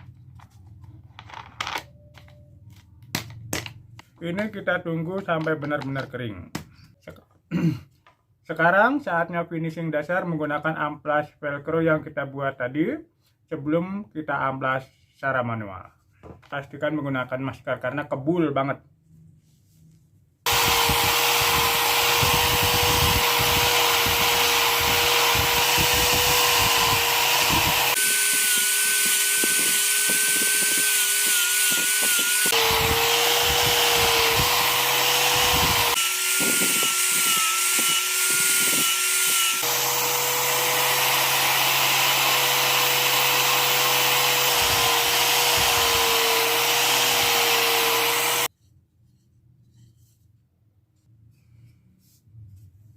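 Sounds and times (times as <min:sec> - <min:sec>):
grinder motor whine: 0:20.5 - 0:48.5
sanding wood: 0:20.5 - 0:48.5.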